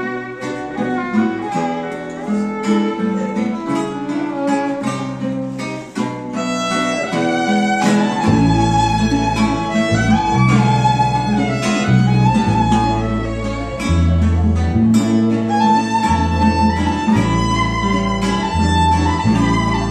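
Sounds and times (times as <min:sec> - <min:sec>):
violin melody: 0:00.0 - 0:05.3, 0:06.2 - 0:19.9
strummed string instruments: 0:00.0 - 0:19.9
deep bass line: 0:08.2 - 0:19.9.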